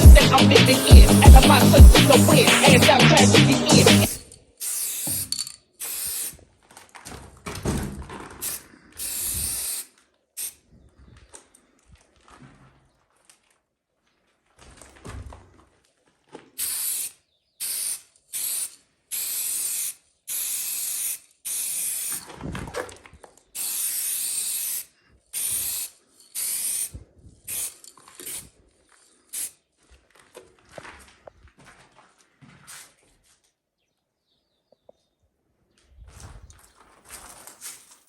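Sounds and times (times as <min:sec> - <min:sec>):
spray paint can hissing: 0:00.0 - 0:06.4, 0:08.4 - 0:10.6, 0:16.6 - 0:22.3, 0:23.6 - 0:26.9, 0:27.5 - 0:28.5, 0:29.3 - 0:29.6.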